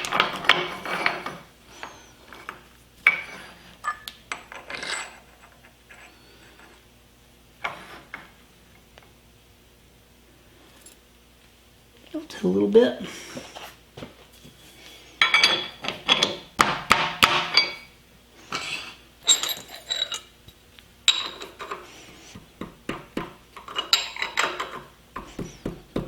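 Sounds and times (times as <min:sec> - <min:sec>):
steel tools clinking and clanking: 0:02.4 - 0:06.2, 0:15.2 - 0:16.4, 0:17.3 - 0:17.9, 0:18.5 - 0:20.4, 0:21.1 - 0:21.9, 0:23.6 - 0:24.9.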